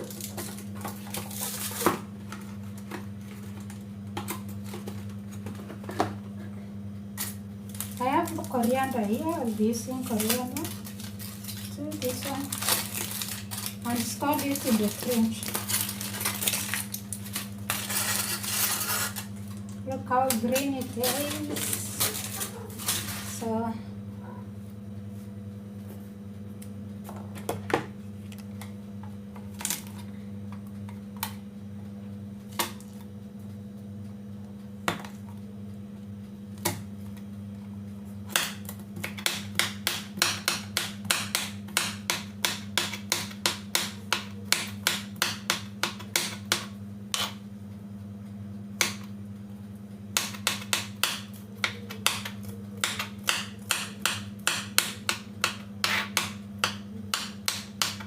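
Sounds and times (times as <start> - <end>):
steady low hum: 0.0 - 58.0
knife chopping on cutting board: 38.3 - 47.3, 50.2 - 58.0.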